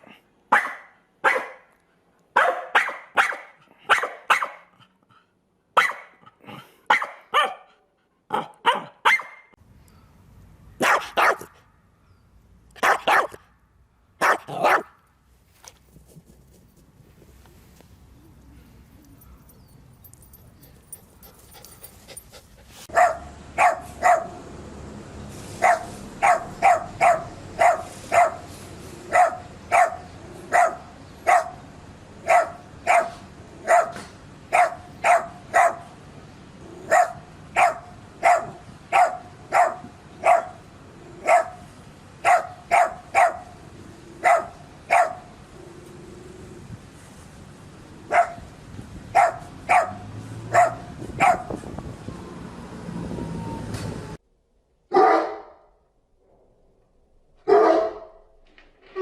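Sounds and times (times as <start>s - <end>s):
dog barking: 0.5s - 1.7s, 2.4s - 4.8s, 5.8s - 6.2s, 6.9s - 9.6s, 10.8s - 11.6s, 12.8s - 13.4s, 14.2s - 15.0s, 22.9s - 24.4s, 25.6s - 28.5s, 29.1s - 31.6s, 32.2s - 35.9s, 36.9s - 40.6s, 41.2s - 41.6s, 42.2s - 43.6s, 44.2s - 45.3s, 48.1s - 48.4s, 49.2s - 51.6s, 54.9s - 55.6s, 57.5s - 58.1s.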